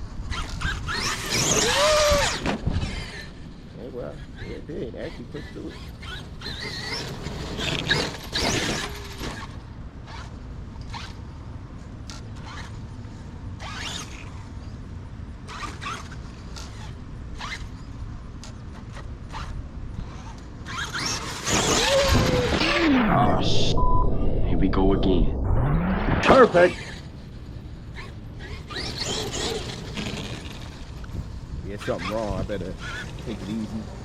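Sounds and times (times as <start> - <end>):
steady low rumble: 22.3 - 28.4.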